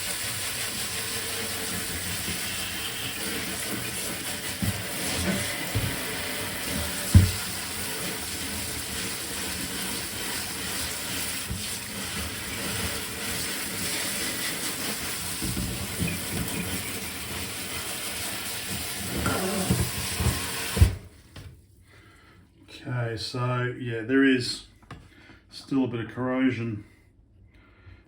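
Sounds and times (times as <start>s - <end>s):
tap water running into sink: 0.0s - 21.1s.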